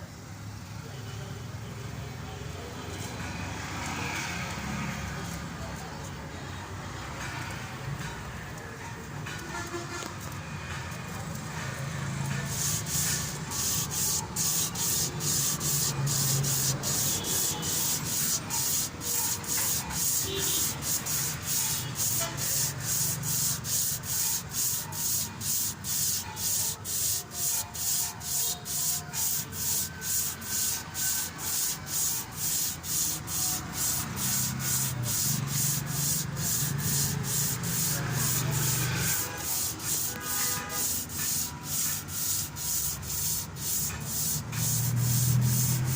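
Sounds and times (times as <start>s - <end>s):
abrasive cloth rubbing on metal: 12.2s - 45.9s.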